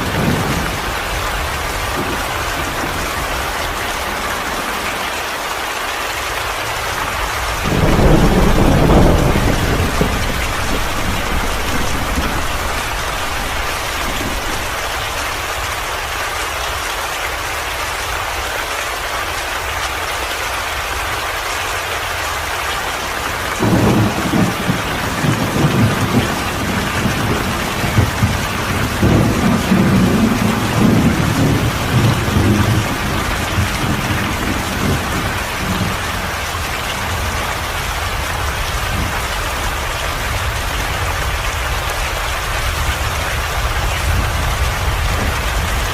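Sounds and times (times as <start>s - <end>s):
steady rain falling: 0.0s - 45.9s
low roll of thunder: 7.2s - 15.5s, 23.6s - 36.4s.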